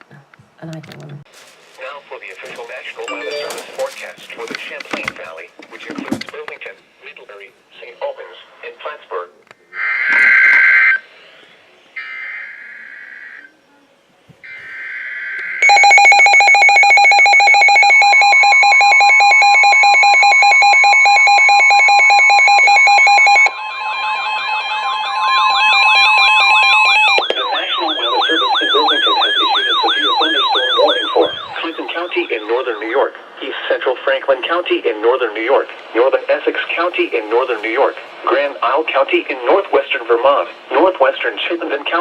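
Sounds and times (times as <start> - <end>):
screechy digital data tones: 14.8 - 33.0
rapidly pulsing beep: 15.6 - 33.0
steady warning alarm tone: 15.6 - 33.2
siren-like sweeps: 23.4 - 32.8.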